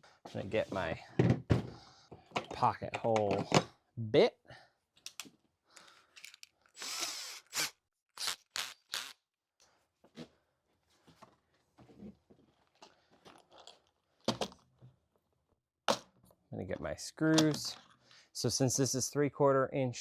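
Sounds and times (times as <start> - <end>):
plastic and metal clicks and knocks: 2.3 - 3.7.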